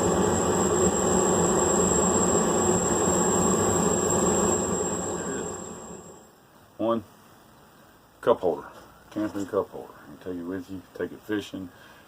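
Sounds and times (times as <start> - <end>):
forge roaring: 0.0 - 6.3.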